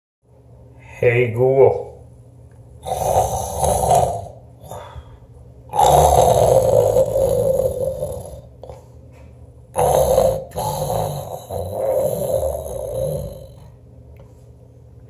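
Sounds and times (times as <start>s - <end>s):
person snoring: 2.8s - 8.9s, 9.8s - 13.8s.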